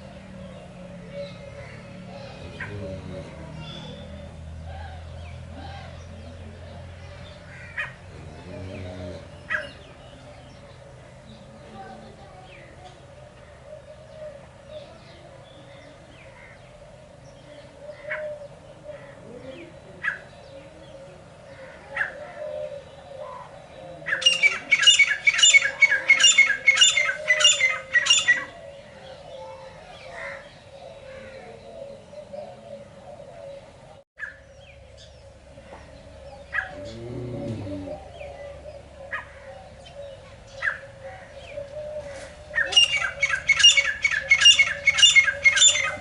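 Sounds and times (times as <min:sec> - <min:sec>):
francolin calling: 0:42.5 - 0:46.0.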